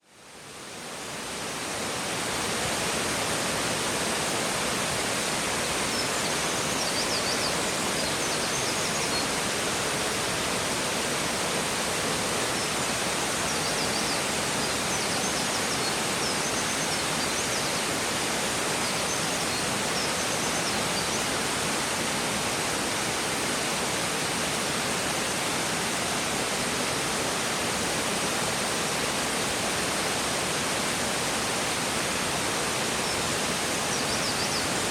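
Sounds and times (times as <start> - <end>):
waterfall rushing: 0.2 - 34.9.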